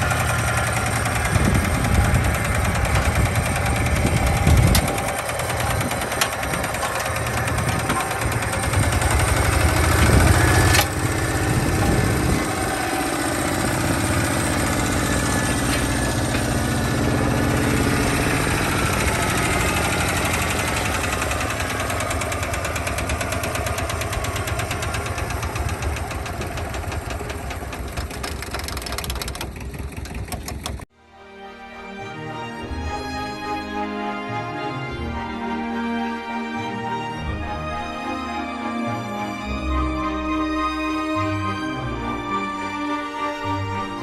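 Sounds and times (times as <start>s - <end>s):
diesel tractor engine knocking: 0.0s - 30.9s.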